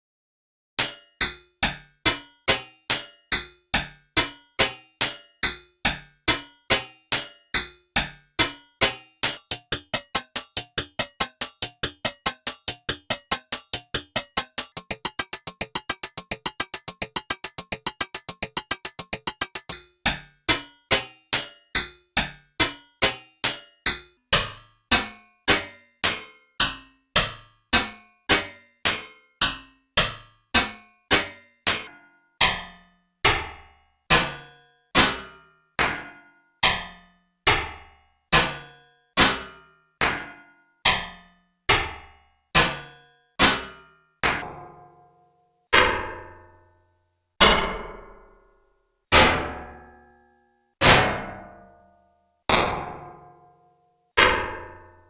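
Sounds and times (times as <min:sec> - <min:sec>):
synthesized metallic impacts: 0:07.6 - 0:21.1.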